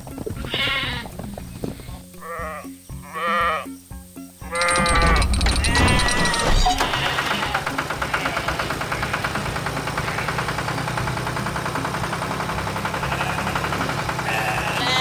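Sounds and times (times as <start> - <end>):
vehicle engine chugging: 4.5 - 15.0.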